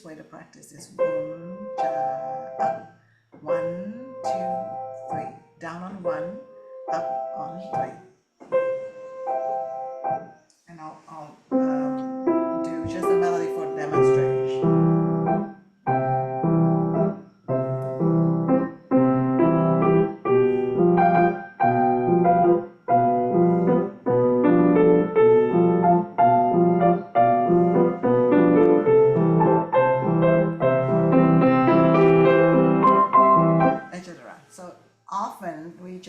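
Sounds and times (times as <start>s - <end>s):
piano playing a waltz: 1.0s - 2.9s, 3.5s - 10.4s, 11.5s - 33.9s.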